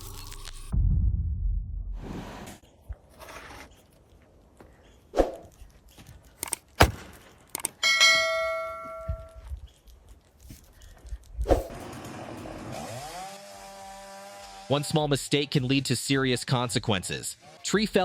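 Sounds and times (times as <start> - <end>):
ringing metallic clang: 7.8 - 9.3.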